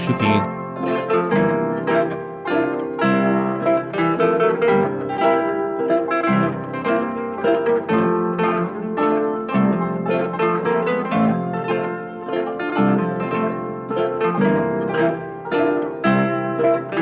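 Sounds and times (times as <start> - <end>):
plucked string music: 0.0 - 17.0.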